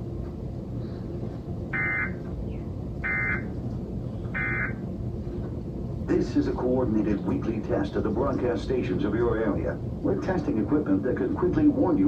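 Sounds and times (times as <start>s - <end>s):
raspy two-tone data warble: 4.4s - 4.8s.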